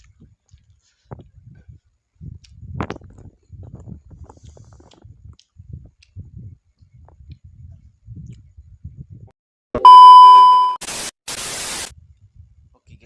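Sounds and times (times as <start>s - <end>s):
faint chewing: 0.0s - 1.4s, 2.3s - 6.2s
loud beep: 9.8s - 10.8s
static hiss bursts: 10.8s - 11.9s.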